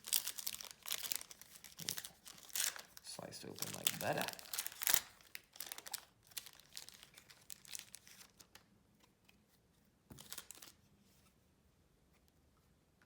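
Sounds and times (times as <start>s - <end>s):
foil wrapper crinkling: 0.0s - 8.7s, 10.1s - 10.8s.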